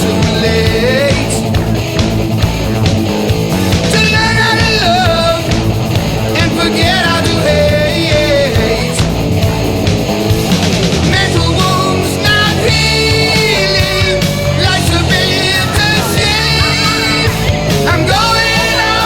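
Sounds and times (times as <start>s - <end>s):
person singing: 0.0s - 1.6s, 3.9s - 9.2s, 11.0s - 19.0s
loud rock band: 0.0s - 19.0s.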